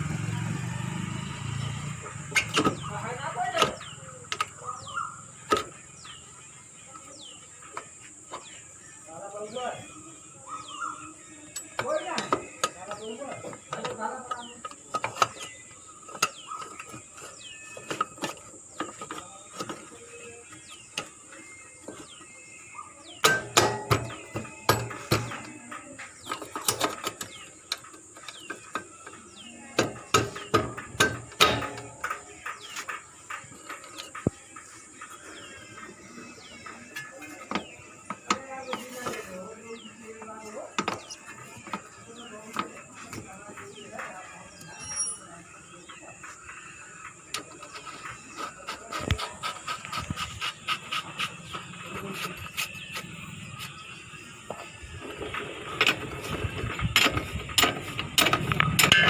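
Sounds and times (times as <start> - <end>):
birds chirping: 0.0 - 59.0
hand tools clicking and knocking: 2.2 - 6.2, 11.5 - 22.4, 23.1 - 45.2, 46.1 - 53.8, 54.4 - 59.0.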